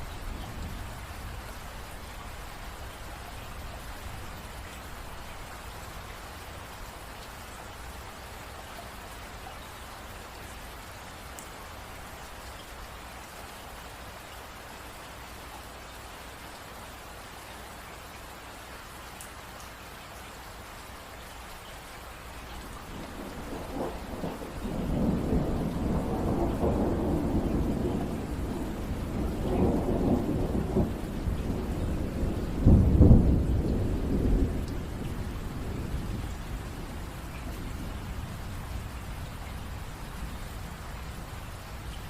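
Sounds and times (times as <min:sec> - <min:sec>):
steady rain: 0:00.0 - 0:42.0
thunder rumbling: 0:22.8 - 0:42.0.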